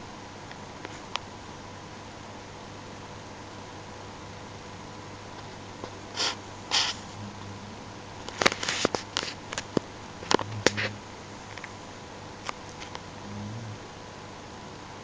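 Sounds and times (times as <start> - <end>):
faint low rumble: 6.6 - 12.1, 12.8 - 14.2
snoring breaths: 13.2 - 13.9.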